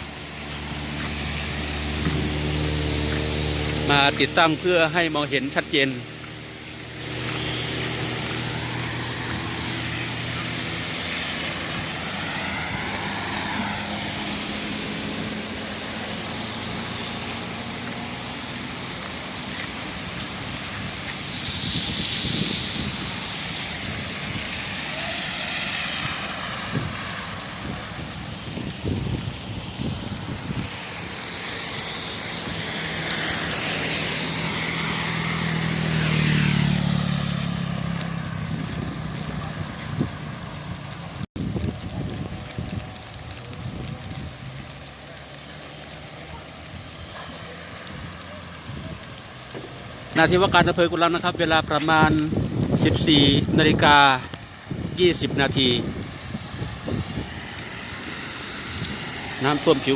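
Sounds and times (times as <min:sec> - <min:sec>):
tyres hissing through water: 0:00.0 - 0:38.4, 0:53.4 - 0:59.9
vehicle engine hum: 0:00.0 - 0:59.9.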